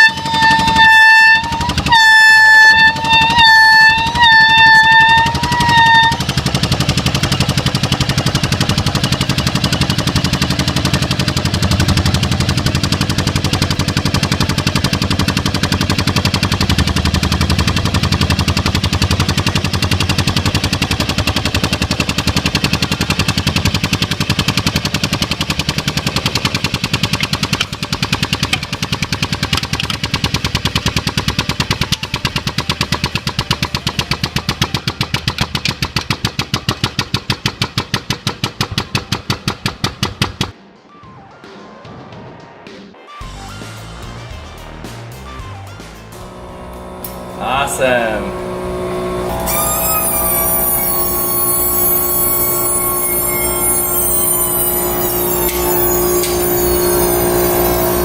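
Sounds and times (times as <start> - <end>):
air horn diaphragm rattling: 0.0 - 12.0.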